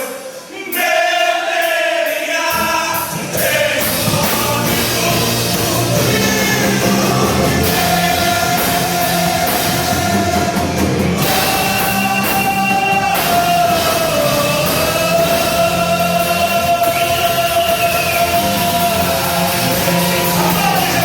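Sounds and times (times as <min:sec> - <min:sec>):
rock band playing instrumental: 0:03.3 - 0:21.0.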